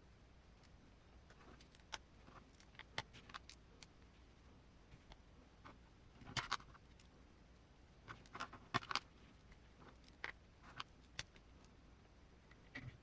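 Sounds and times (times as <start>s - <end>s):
small parts clicking and tapping: 0.6s - 4.1s, 8.0s - 11.8s.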